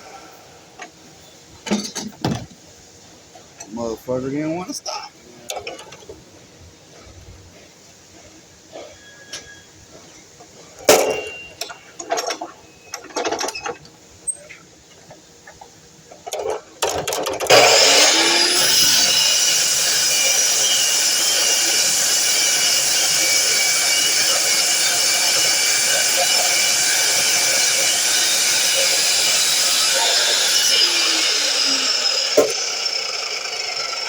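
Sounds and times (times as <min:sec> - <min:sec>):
miter saw motor whining: 0:17.5 - 0:34.0.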